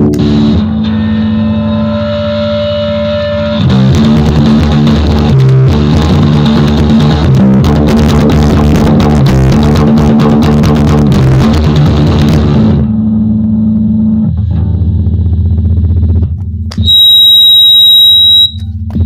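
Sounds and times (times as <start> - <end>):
electric bass guitar riff: 0.0 - 19.0.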